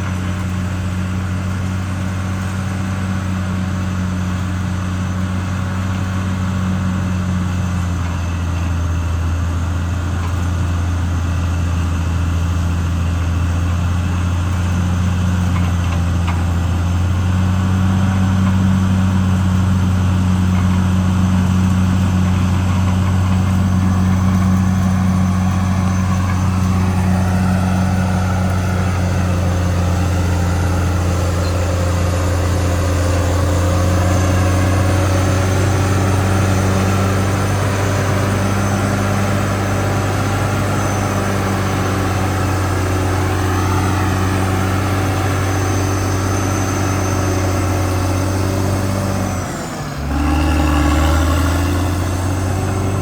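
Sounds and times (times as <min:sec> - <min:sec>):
bulldozer diesel engine drone: 0:00.0 - 0:53.0
faint rising whine: 0:23.1 - 0:53.0.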